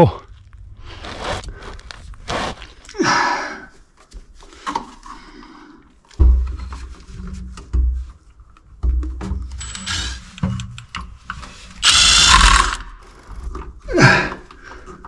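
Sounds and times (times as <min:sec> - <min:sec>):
hand tools clicking and knocking: 0:08.9 - 0:11.1
harsh burst of noise: 0:11.8 - 0:12.8.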